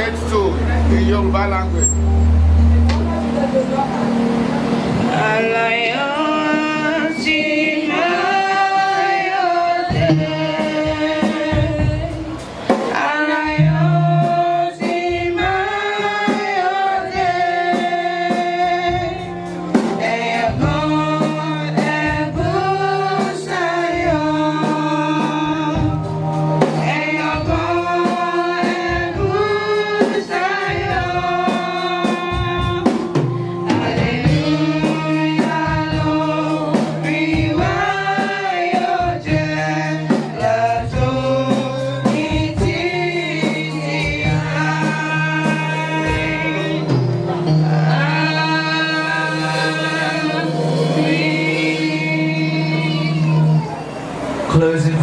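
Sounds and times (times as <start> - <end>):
group singing gospel song: 0.0 - 55.0
steady percussive beat: 0.0 - 55.0.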